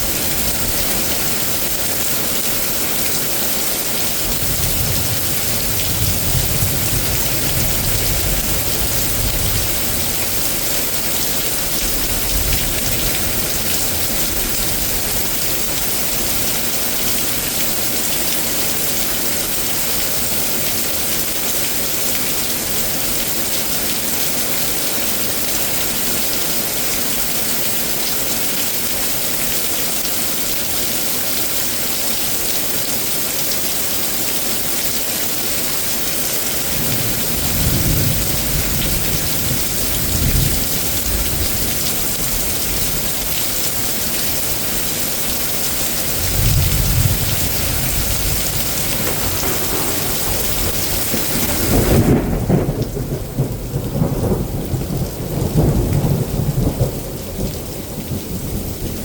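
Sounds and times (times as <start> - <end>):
heavy rain hissing: 0.0 - 59.0
thunder rumbling: 4.3 - 16.4, 36.6 - 43.2, 46.0 - 59.0.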